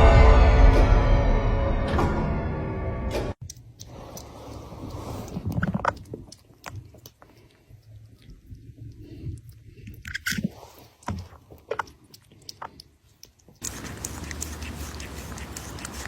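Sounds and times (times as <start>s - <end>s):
chewing crunches and clicks: 3.4s - 16.0s.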